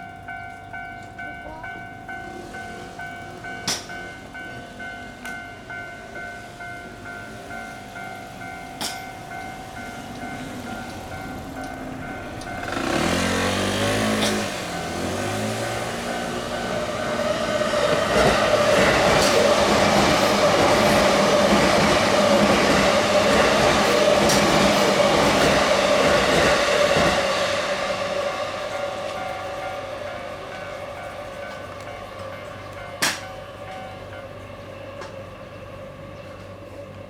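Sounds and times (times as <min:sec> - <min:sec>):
crossing warning bell: 0:00.0 - 0:37.0
train wheels rushing on rails: 0:00.0 - 0:37.0
train motor whine: 0:08.2 - 0:37.0.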